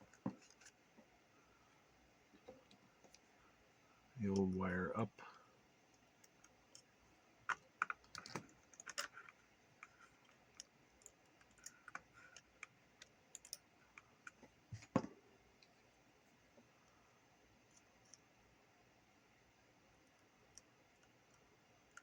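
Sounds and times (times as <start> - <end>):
small tools clicking on plastic: 7.5 - 14.9.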